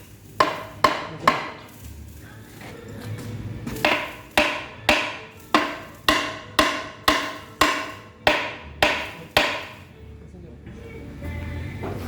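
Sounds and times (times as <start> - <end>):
hammer blows on steel: 3.8 - 9.9.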